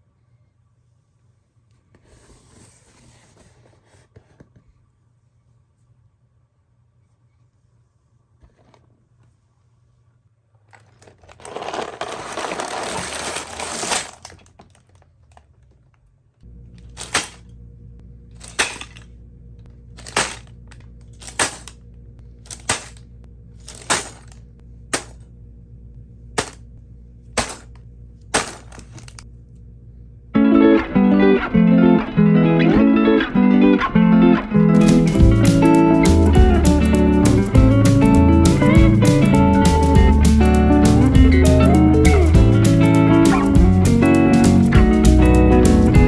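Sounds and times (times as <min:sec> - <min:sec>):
plastic packaging tearing: 0:10.9 - 0:15.0, 0:17.0 - 0:17.4, 0:22.5 - 0:23.0, 0:23.7 - 0:24.3
low steady hum: 0:16.2 - 0:31.6
guitar music: 0:30.4 - 0:46.0.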